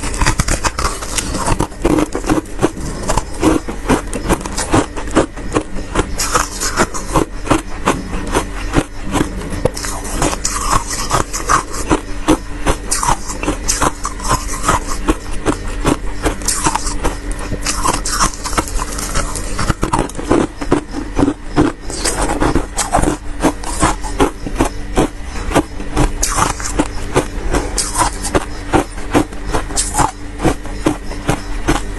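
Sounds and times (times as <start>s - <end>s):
scraping and crunching frost: 0.0s - 31.9s
steady low hum: 0.0s - 31.9s.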